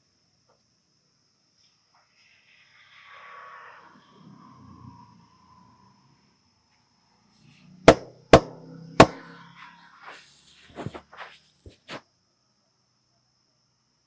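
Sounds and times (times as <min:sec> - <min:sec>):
sharp hand strikes: 0:07.9 - 0:09.2, 0:10.8 - 0:11.0.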